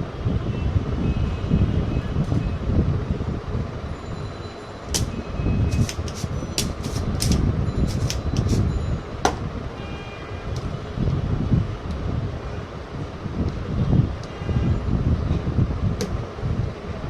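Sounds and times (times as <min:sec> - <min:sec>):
hand tools clicking and tapping: 0:05.7 - 0:08.6.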